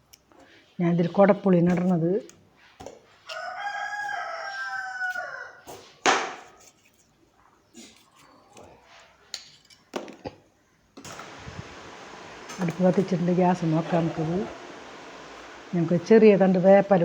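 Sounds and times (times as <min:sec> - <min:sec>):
rooster crowing: 0:03.3 - 0:05.7.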